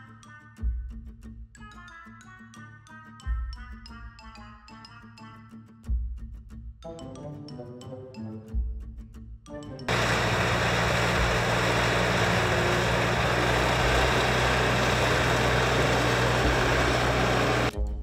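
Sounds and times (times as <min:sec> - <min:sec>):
tractor engine running: 0:09.9 - 0:17.7.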